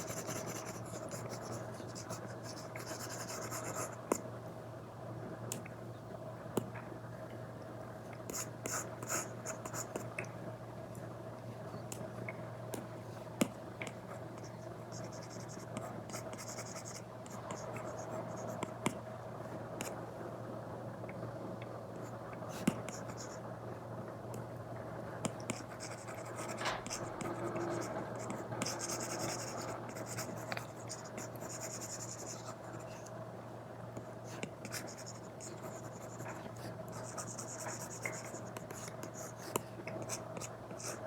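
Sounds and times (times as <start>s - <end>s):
faint steady hum: 0.0s - 41.0s
stylus scratching on screen: 25.5s - 33.1s.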